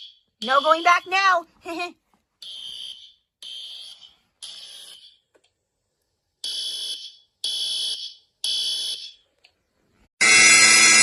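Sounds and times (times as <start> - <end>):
fire alarm horn blasts: 0.0 - 1.4.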